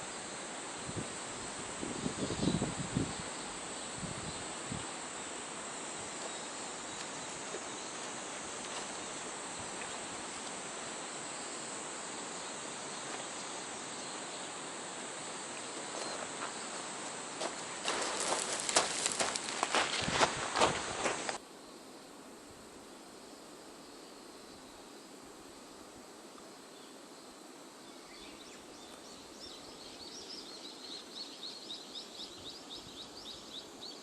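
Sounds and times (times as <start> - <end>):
high insect drone: 0.0 - 34.0
rustling and clicking handling: 17.8 - 20.1.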